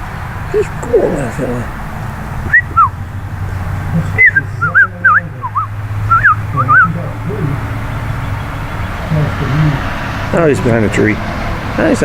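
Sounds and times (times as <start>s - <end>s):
person whistling: 2.5s - 2.9s, 4.2s - 6.9s.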